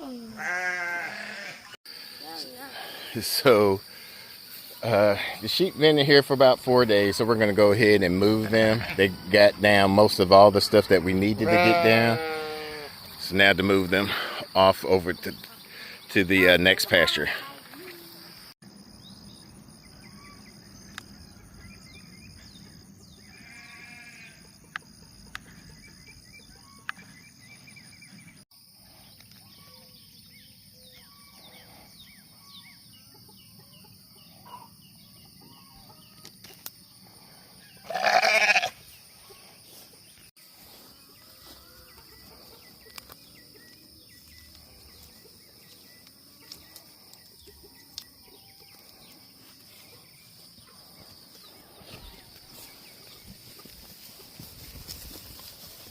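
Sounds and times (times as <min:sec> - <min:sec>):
sheep bleating: 0:00.3 - 0:01.8, 0:08.6 - 0:09.0, 0:11.3 - 0:13.0, 0:23.3 - 0:24.4, 0:37.8 - 0:38.8.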